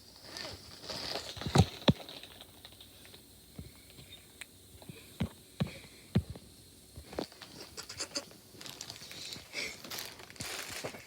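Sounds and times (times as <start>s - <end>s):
objects tapping and knocking: 1.1s - 4.2s.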